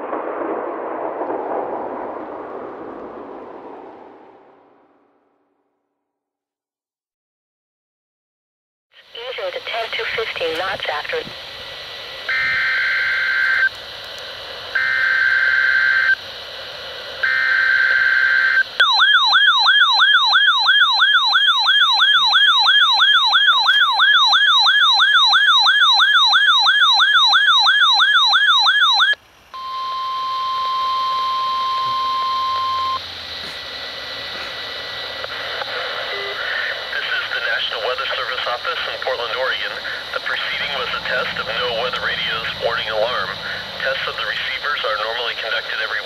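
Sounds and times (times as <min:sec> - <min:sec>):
steady warning alarm tone: 0:12.2 - 0:13.8, 0:14.7 - 0:16.2, 0:17.2 - 0:34.6, 0:39.1 - 0:46.0
warbling alert siren: 0:12.3 - 0:13.7, 0:14.8 - 0:16.2, 0:17.2 - 0:34.4, 0:39.9 - 0:45.6
digital data tone bursts: 0:18.8 - 0:33.1, 0:39.9 - 0:46.0.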